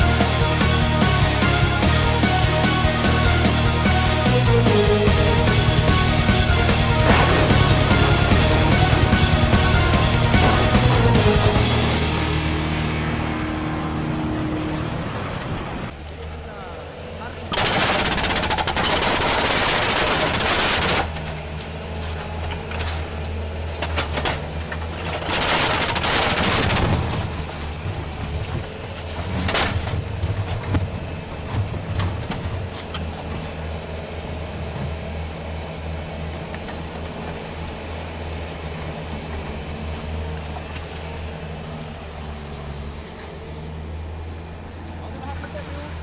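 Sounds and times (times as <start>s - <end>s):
machine droning: 0.0s - 45.7s
sharp clicks: 17.5s - 21.1s, 25.3s - 27.0s.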